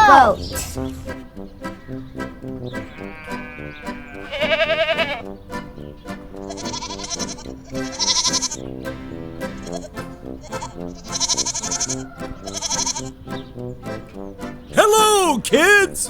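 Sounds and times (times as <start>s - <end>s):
background music: 0.0s - 16.0s
goat bleating: 2.9s - 5.2s, 6.5s - 8.7s, 9.5s - 13.2s.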